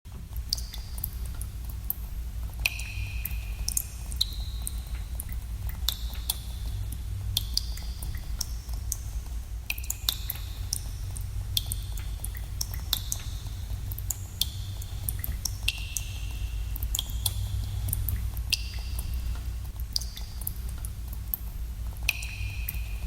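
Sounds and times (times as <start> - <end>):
water drops plinking in a cave: 0.2 - 23.0
low rumble: 10.3 - 23.0.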